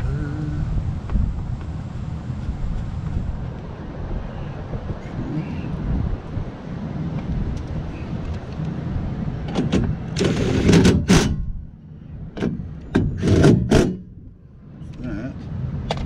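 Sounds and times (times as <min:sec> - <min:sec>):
low rumble: 0:00.0 - 0:10.2
parts knocking and rattling: 0:09.4 - 0:11.6, 0:12.4 - 0:14.1.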